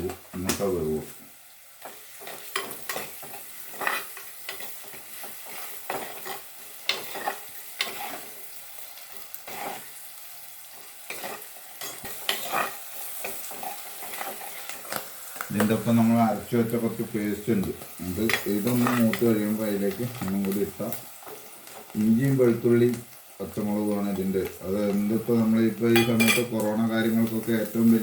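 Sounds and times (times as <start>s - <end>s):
seeds sizzling in oil: 0.0s - 28.0s
spoon scraping pan: 1.8s - 8.5s, 9.2s - 10.0s, 10.8s - 16.0s, 17.6s - 22.0s, 24.9s - 28.0s.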